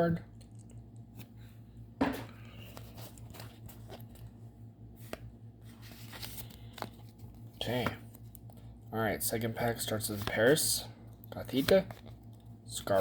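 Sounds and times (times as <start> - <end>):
trading cards being handled: 2.0 - 8.8, 9.7 - 13.0
card rustle: 2.4 - 8.8, 9.9 - 13.0.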